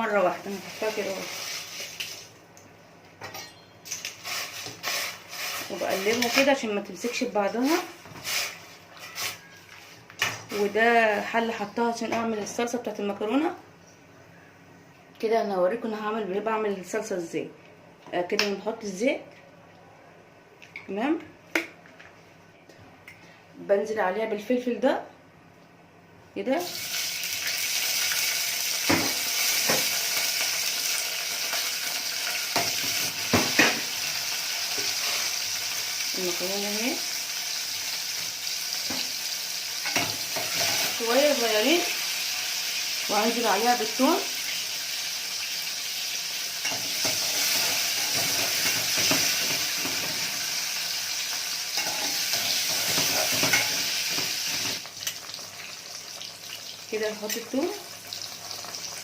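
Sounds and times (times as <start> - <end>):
peppers sizzling in hot oil: 0.0 - 2.4, 3.8 - 11.2, 26.6 - 59.0.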